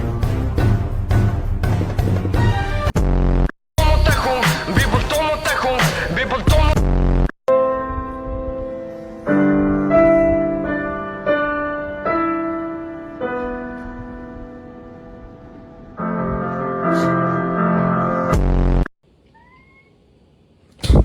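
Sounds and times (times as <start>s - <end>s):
piano chords: 7.5s - 18.4s.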